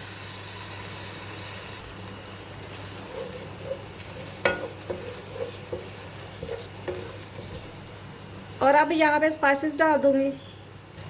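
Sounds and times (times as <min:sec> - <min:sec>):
food sizzling in hot oil: 0:00.0 - 0:09.8
spoon stirring and knocking pot: 0:02.6 - 0:08.0.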